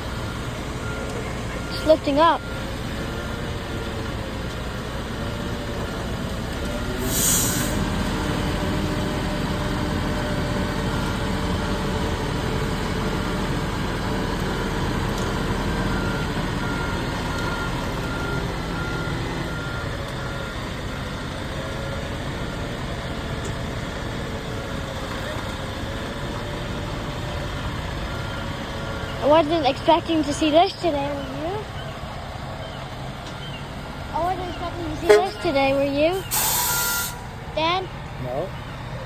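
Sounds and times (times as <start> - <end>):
faint warning beep: 0.0 - 3.6, 15.4 - 21.8, 27.9 - 37.9
heavy machinery engine running: 0.0 - 39.0
air hiss: 7.0 - 7.9, 36.3 - 37.3.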